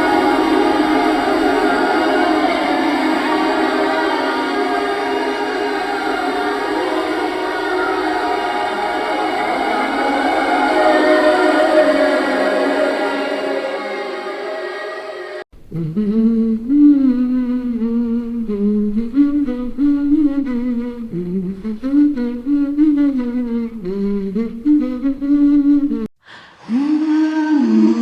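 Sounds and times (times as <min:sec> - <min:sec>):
person humming: 0:15.6 - 0:28.0.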